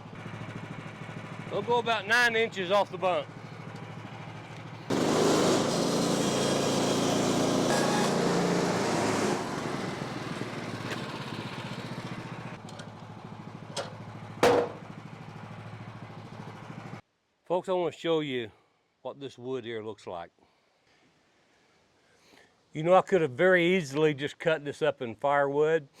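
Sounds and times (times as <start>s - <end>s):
sawmill gas engine running: 0.0s - 17.0s
saw blade cutting log: 4.9s - 12.2s, 14.4s - 14.8s
sharp knock: 14.4s - 14.8s.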